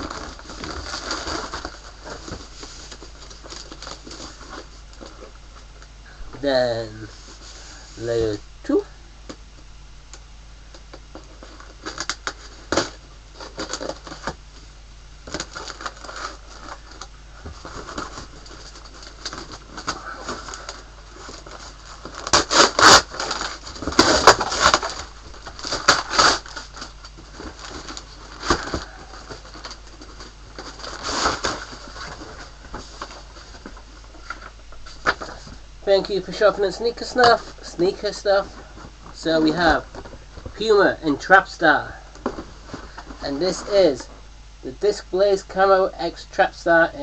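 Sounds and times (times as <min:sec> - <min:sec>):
packaging rustling and crinkling: 0:00.0 - 0:05.8, 0:10.8 - 0:40.6.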